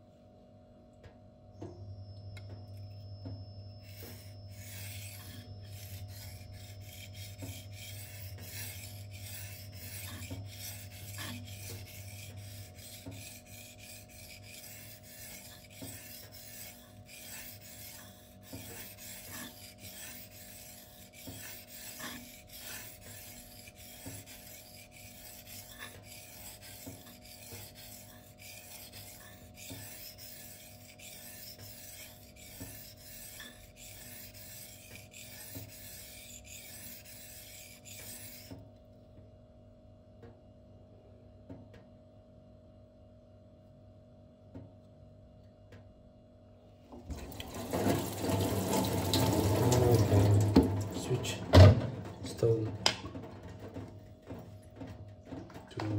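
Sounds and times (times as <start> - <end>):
knife scraping on whetstone: 2.8 - 38.6, 47.4 - 51.4.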